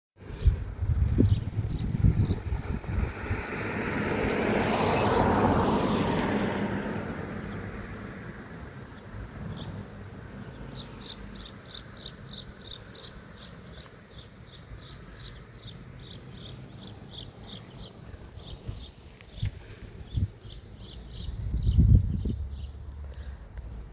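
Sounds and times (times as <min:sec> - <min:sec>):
vehicle passing by: 0:00.6 - 0:12.3.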